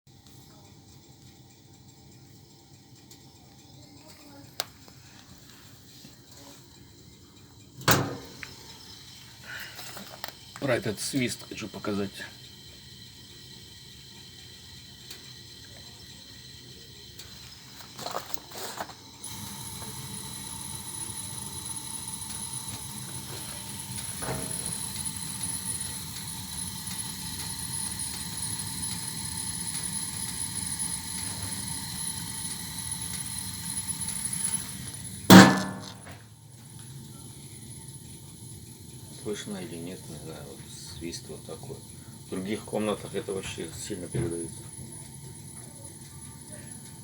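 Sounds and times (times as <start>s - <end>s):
boiler clicks: 10.1s - 47.0s
loud knock: 35.3s - 36.1s.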